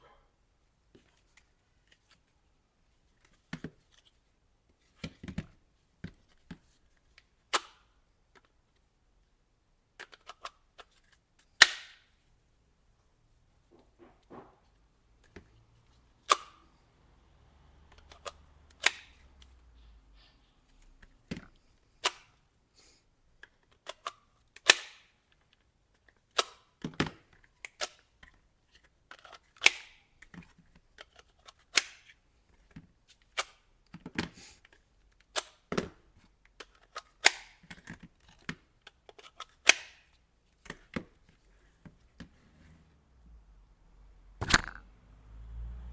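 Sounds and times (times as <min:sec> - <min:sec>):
plastic magazine clicking into pouch: 0:07.5 - 0:07.8, 0:10.0 - 0:12.1, 0:18.0 - 0:19.2, 0:23.4 - 0:25.1, 0:26.0 - 0:28.1, 0:29.1 - 0:30.4, 0:31.0 - 0:32.2, 0:34.7 - 0:35.9, 0:36.5 - 0:40.8, 0:44.4 - 0:44.8.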